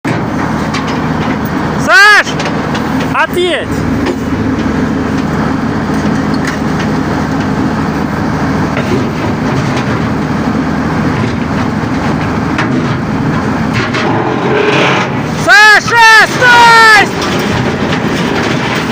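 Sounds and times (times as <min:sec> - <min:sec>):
diesel engine running: 0:00.0 - 0:18.9
debris knocking and cracking: 0:17.0 - 0:18.9.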